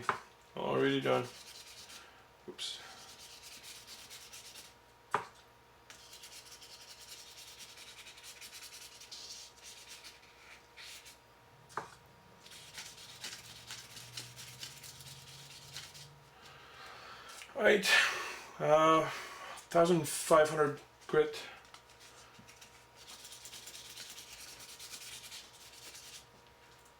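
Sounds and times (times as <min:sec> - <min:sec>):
sandpaper rubbing on plastic: 0:01.2 - 0:02.0, 0:03.0 - 0:04.8, 0:05.9 - 0:11.2, 0:12.4 - 0:16.2, 0:21.9 - 0:26.3.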